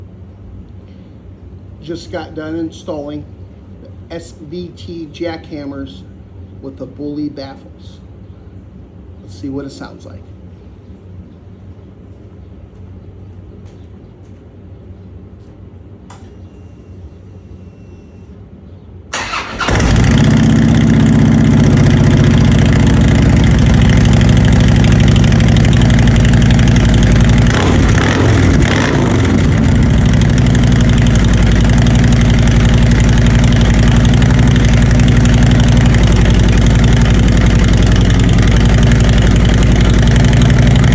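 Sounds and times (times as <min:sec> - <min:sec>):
engine cranking and starting: 0:19.1 - 0:40.9
loud engine idling: 0:19.2 - 0:40.9.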